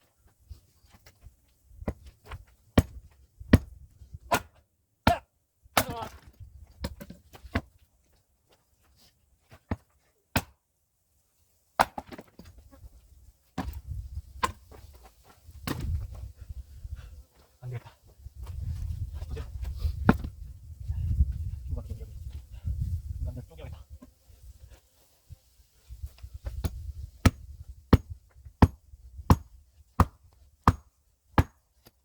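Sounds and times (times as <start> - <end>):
axe striking log: 1.8 - 3.7, 4.3 - 7.7, 9.6 - 10.6, 11.8 - 12.5, 13.6 - 14.6, 15.6 - 16.0, 20.0 - 20.3, 26.4 - 31.6.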